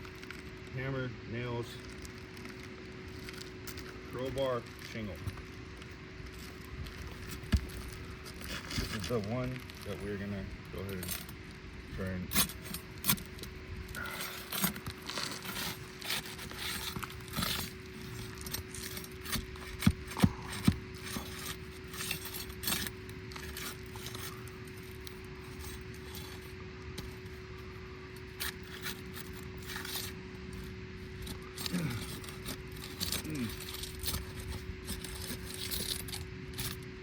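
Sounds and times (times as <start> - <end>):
steady hum: 0.0 - 37.0
hand tools scraping roof shingles: 12.3 - 27.3, 28.2 - 36.9.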